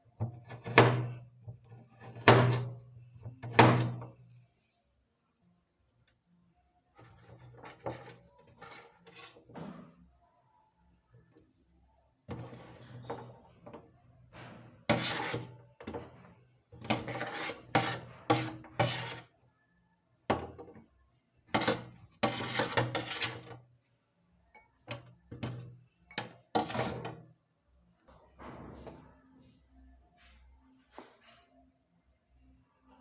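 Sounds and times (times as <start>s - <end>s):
scraping food on wooden surface: 0.2s - 4.2s, 7.0s - 9.9s, 12.3s - 13.4s, 14.4s - 19.3s, 21.5s - 23.6s, 24.9s - 27.2s.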